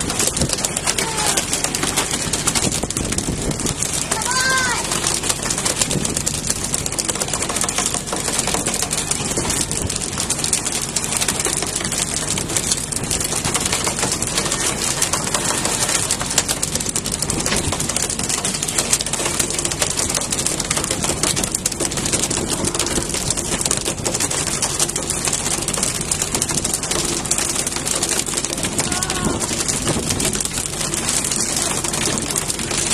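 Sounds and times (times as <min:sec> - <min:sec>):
boat engine running: 0:00.0 - 0:32.9.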